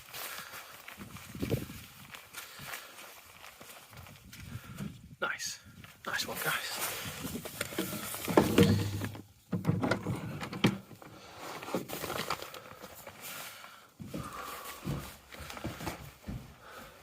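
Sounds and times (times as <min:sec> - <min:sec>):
objects being handled: 0:06.8 - 0:16.5.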